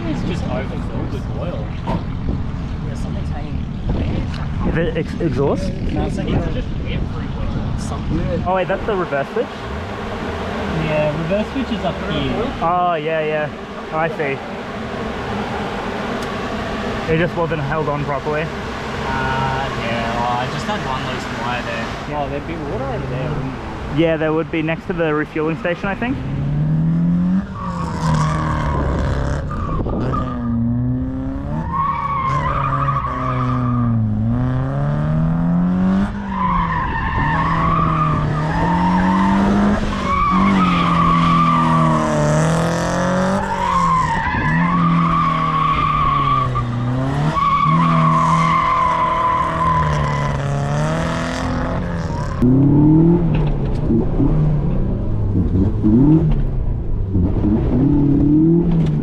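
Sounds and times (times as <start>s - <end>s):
car engine revving: 0.0s - 59.0s
tyre squeal: 31.4s - 34.0s, 36.1s - 42.2s, 43.1s - 52.4s.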